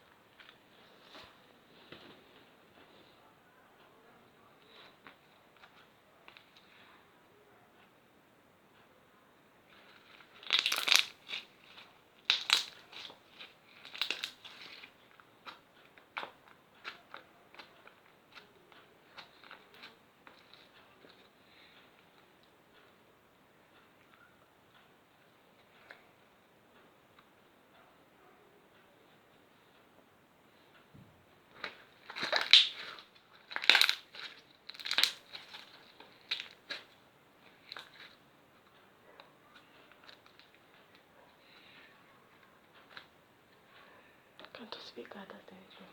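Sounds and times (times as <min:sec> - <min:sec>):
crinkling handling noise: 0:00.0 - 0:03.2, 0:09.7 - 0:22.3, 0:31.5 - 0:41.8
slime squishing and popping: 0:10.0 - 0:15.6, 0:31.6 - 0:36.9.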